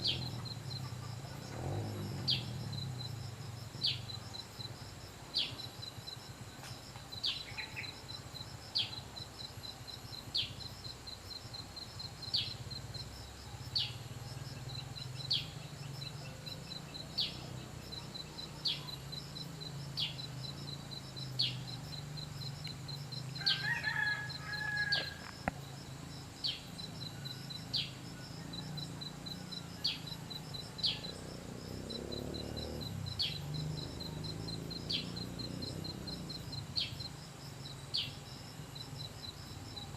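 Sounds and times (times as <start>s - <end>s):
fast high insect trill: 26.0s - 39.9s.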